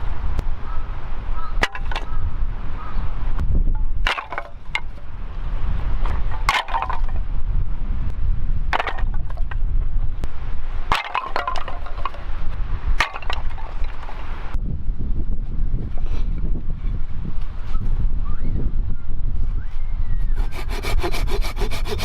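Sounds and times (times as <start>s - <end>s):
wind rumble on microphone: 0.0s - 22.0s
wood splitting crack: 1.6s - 2.1s, 4.0s - 5.0s, 6.3s - 7.2s, 10.9s - 12.2s, 13.0s - 14.2s
axe chopping firewood: 4.0s - 5.0s.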